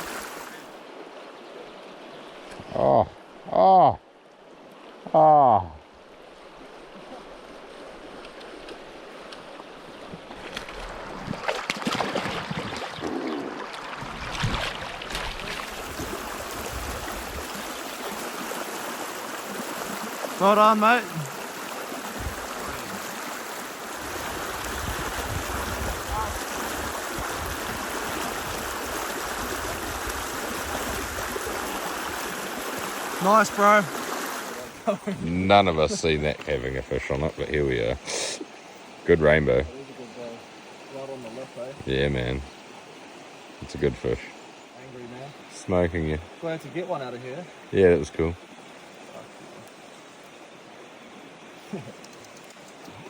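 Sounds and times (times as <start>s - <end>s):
sharp water splashes: 0.0s - 0.7s, 7.8s - 34.8s
river water flowing: 0.0s - 53.0s.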